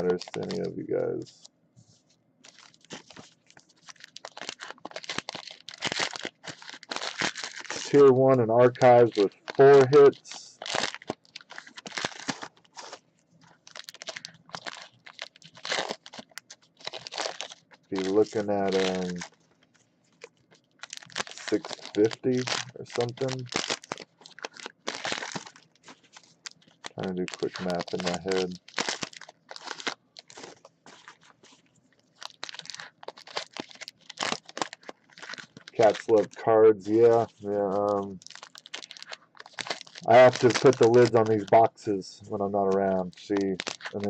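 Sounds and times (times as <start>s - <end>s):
wrappers tearing and crinkling: 0.0s - 1.3s, 2.4s - 44.0s.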